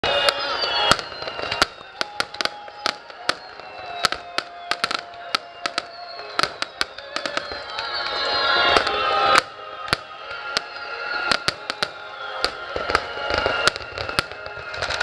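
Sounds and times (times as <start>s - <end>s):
fireworks bangs and cracks: 0.0s - 15.0s
fireworks whistling downward: 0.0s - 15.0s.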